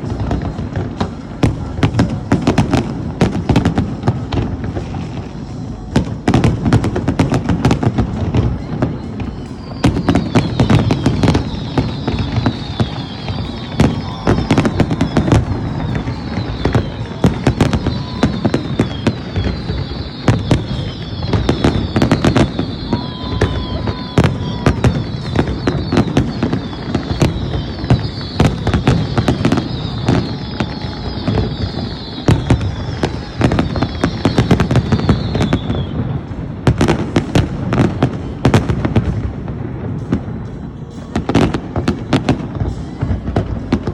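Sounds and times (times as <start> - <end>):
fireworks bangs and booms: 0.0 - 43.9
high falling whistles: 8.6 - 36.4.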